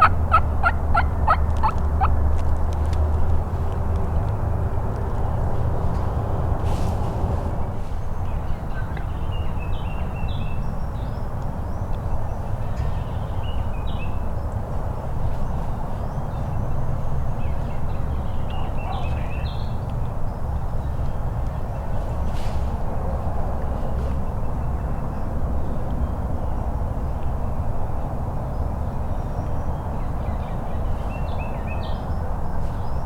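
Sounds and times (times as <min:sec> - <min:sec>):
low rumble: 0:00.0 - 0:08.5
songbird singing: 0:00.0 - 0:22.3, 0:23.0 - 0:33.0.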